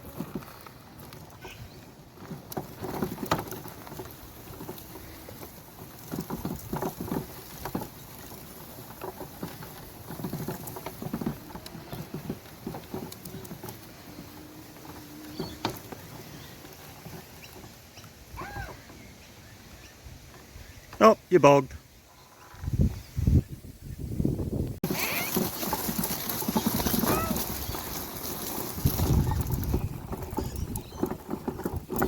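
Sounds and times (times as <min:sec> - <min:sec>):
go-kart chassis rattling: 0:00.0 - 0:21.0, 0:24.8 - 0:32.0.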